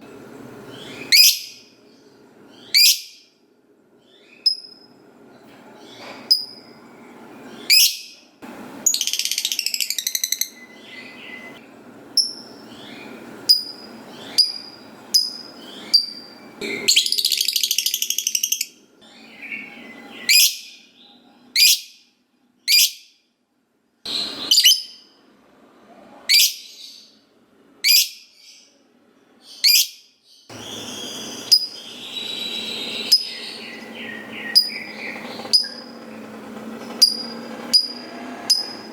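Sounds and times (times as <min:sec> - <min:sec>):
lovebird chirps: 0:00.7 - 0:01.7, 0:02.5 - 0:03.2, 0:04.2 - 0:04.9, 0:05.9 - 0:06.8, 0:07.5 - 0:08.2, 0:08.8 - 0:11.6, 0:12.2 - 0:20.8, 0:29.5 - 0:36.0
lovebird chattering trills: 0:08.9 - 0:11.5, 0:12.2 - 0:18.7, 0:30.6 - 0:36.0.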